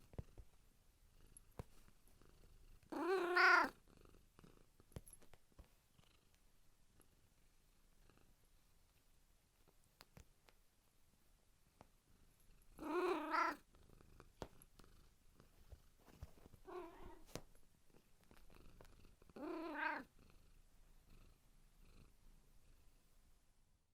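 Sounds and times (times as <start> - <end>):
cat purring: 0.0 - 9.7, 12.0 - 23.1
cat meowing: 3.0 - 3.7, 12.8 - 13.6, 16.7 - 17.3, 19.4 - 20.1.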